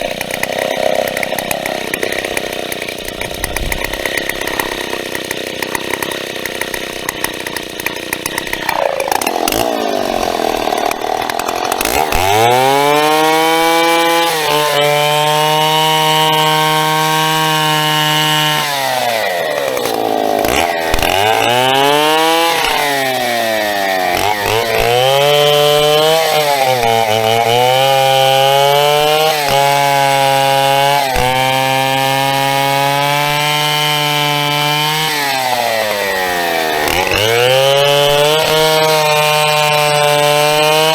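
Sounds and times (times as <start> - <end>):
chainsaw revving and cutting wood: 0.0 - 40.9.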